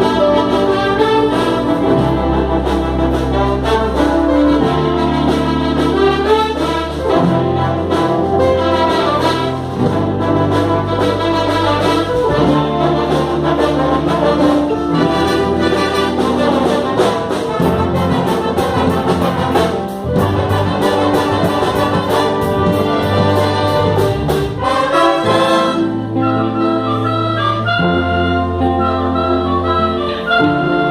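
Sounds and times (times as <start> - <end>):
brass band playing: 0.0 - 30.9
percussion beat: 9.4 - 25.8.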